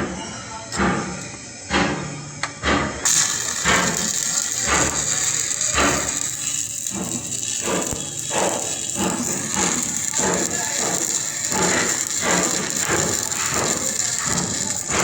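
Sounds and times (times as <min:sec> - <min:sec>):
steady high hiss: 0:03.1 - 0:15.0.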